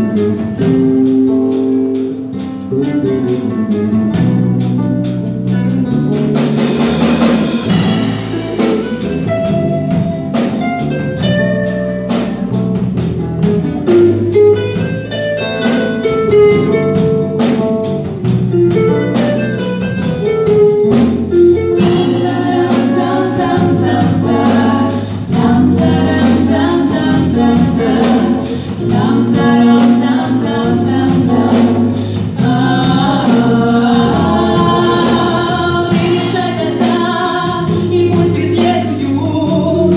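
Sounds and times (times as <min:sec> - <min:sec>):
bass: 0:00.0 - 0:39.9
drum kit: 0:00.0 - 0:39.9
guitars: 0:00.0 - 0:39.9
women singing in harmony: 0:21.8 - 0:39.9.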